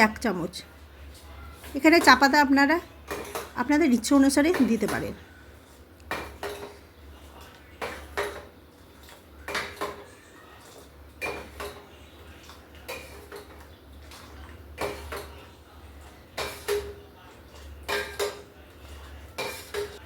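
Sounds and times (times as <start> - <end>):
metal ladle clinking on pan: 19.4 - 20.0.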